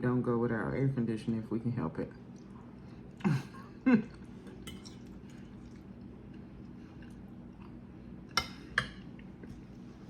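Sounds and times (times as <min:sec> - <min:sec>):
faint low hum: 0:00.0 - 0:10.0
quiet chewing: 0:02.2 - 0:10.0.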